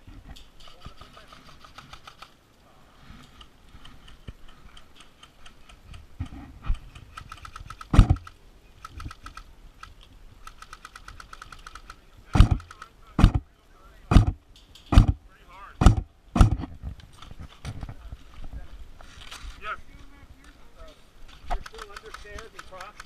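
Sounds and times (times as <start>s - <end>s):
airsoft guns rapid clicking: 0.6s - 2.4s, 3.4s - 6.1s, 6.8s - 13.4s, 21.3s - 23.0s
heavy thumps: 7.9s - 8.3s, 12.4s - 13.4s, 14.1s - 15.2s, 15.8s - 17.0s.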